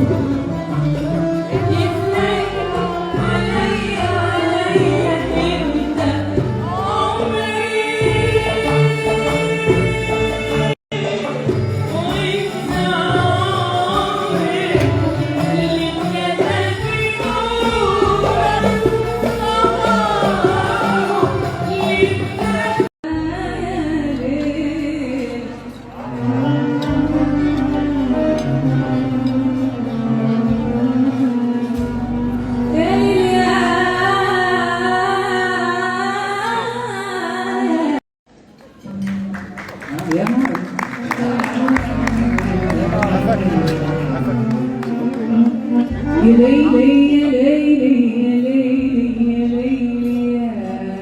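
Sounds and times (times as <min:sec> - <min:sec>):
instrumental accompaniment: 0:00.0 - 0:35.2, 0:38.3 - 0:49.1
person singing: 0:01.5 - 0:32.1.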